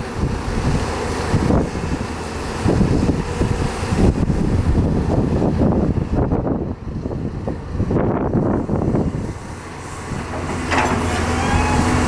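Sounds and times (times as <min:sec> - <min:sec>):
excavator diesel engine rumbling: 0:00.0 - 0:12.0.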